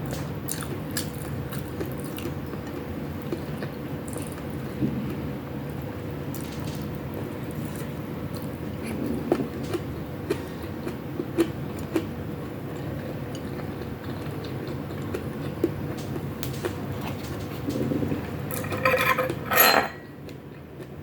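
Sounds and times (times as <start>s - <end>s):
person chewing food: 0.5s - 4.8s, 7.6s - 16.3s.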